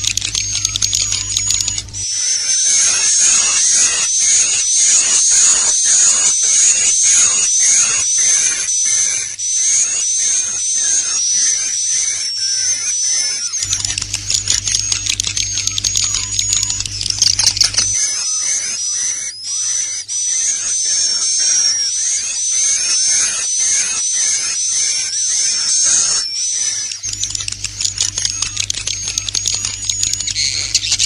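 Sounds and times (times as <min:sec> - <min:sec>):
low hum: 0:00.0 - 0:02.2, 0:13.6 - 0:18.0, 0:27.1 - 0:31.0
rapid clicking: 0:00.0 - 0:02.2, 0:13.6 - 0:18.0, 0:27.0 - 0:31.0
swiftlets twittering and chirping: 0:00.0 - 0:31.0.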